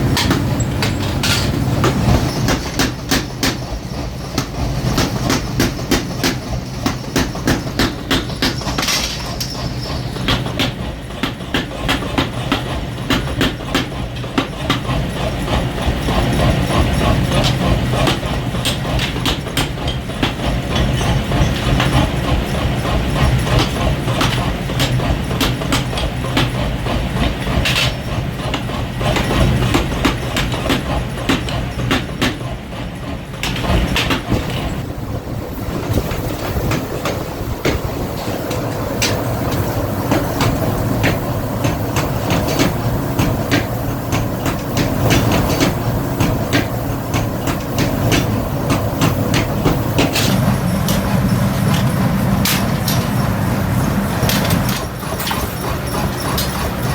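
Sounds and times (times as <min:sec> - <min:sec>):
hammer striking metal: 0:00.0 - 0:03.7, 0:04.4 - 0:14.8, 0:36.0 - 0:53.4
steady machine hum: 0:00.0 - 0:13.1, 0:34.5 - 0:56.9.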